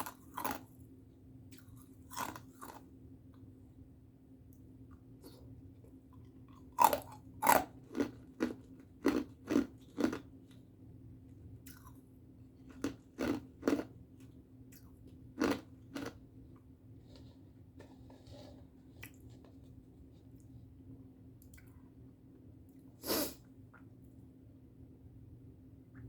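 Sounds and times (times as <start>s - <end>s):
person crunching ice: 2.1s - 2.8s.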